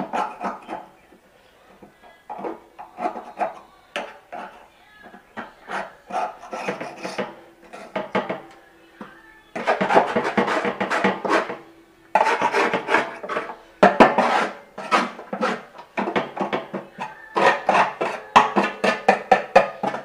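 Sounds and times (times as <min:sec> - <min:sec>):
brush scraping strokes: 0:05.6 - 0:08.0, 0:09.6 - 0:11.6, 0:12.2 - 0:20.0.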